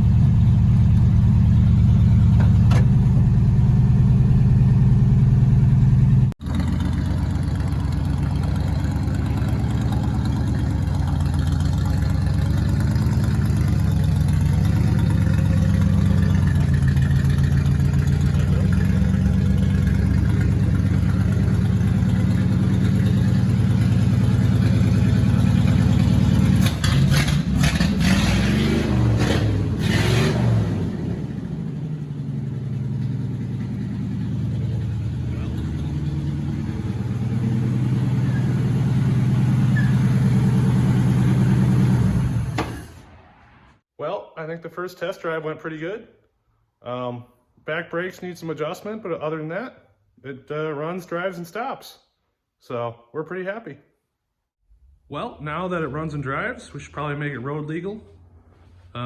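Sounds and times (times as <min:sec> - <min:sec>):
car engine droning: 0:00.0 - 0:43.8.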